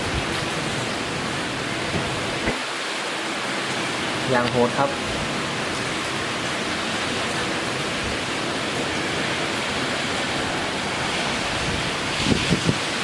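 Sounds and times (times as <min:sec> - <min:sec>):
heavy rain: 0:00.0 - 0:13.0
strong wind rushing: 0:10.2 - 0:13.0.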